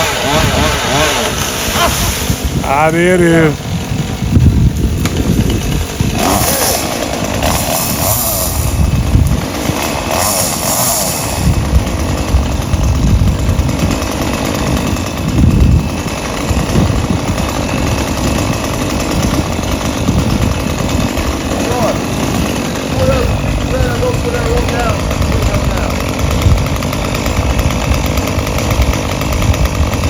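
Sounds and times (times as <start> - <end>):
chainsaw cutting wood: 0.0 - 30.0.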